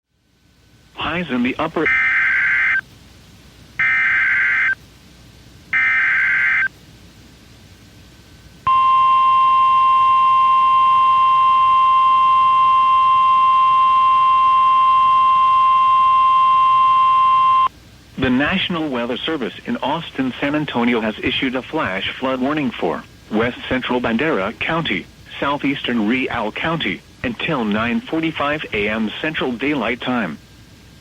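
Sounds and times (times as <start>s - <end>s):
steady warning alarm tone: 1.8s - 2.8s, 3.8s - 4.8s, 5.7s - 6.7s, 8.7s - 17.7s
data bursts: 3.8s - 4.8s, 5.8s - 6.7s.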